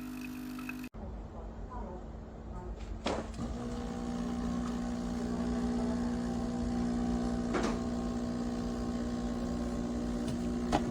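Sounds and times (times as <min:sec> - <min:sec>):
espresso machine humming: 0:00.0 - 0:00.9, 0:03.4 - 0:10.9.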